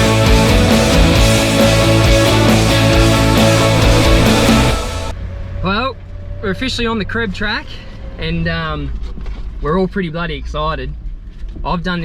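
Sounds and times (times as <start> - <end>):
loud rock music: 0.0 - 5.1.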